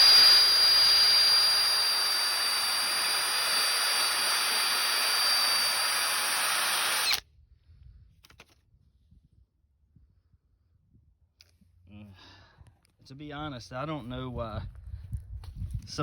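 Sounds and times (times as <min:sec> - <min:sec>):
rotary power tool whining: 0:00.0 - 0:07.2.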